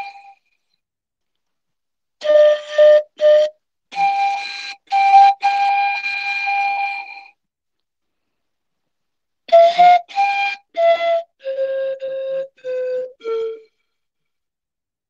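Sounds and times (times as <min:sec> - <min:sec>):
pan flute melody: 0:00.0 - 0:00.5, 0:02.2 - 0:07.4, 0:09.5 - 0:13.9.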